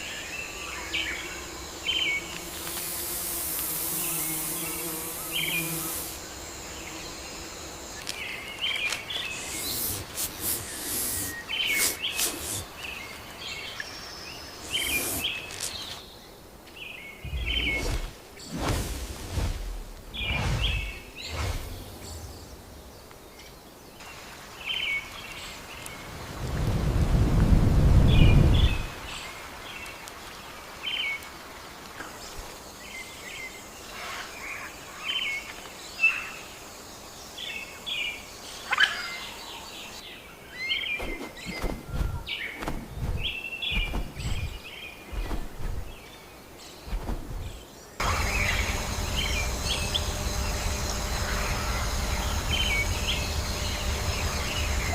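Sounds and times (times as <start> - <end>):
bird chirps and calls: 8.4 - 16.0
short low thuds: 41.6 - 45.9.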